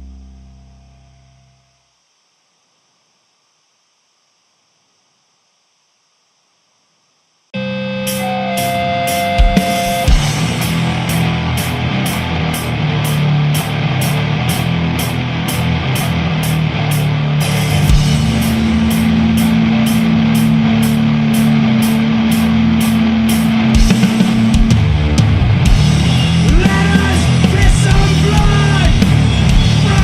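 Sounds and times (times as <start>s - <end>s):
distorted metal guitars and bass: 0.0s - 1.7s, 7.6s - 30.0s
drums: 7.6s - 30.0s.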